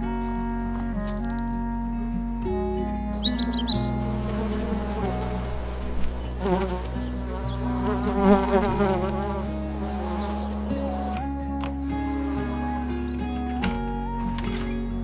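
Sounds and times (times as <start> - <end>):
flying insect buzzing: 3.2 - 11.2.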